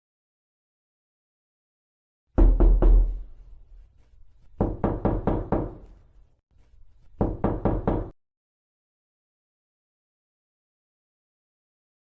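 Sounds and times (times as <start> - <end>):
knocking on wooden door: 2.4 - 3.3, 4.6 - 5.8, 7.2 - 8.2.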